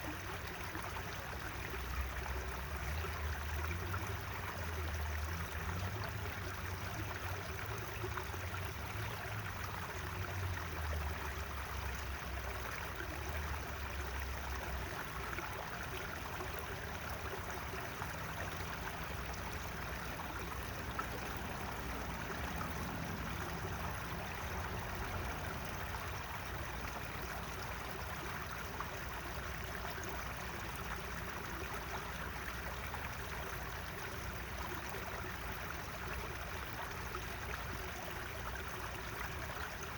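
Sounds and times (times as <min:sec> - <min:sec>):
stream flowing: 0:00.0 - 0:39.9.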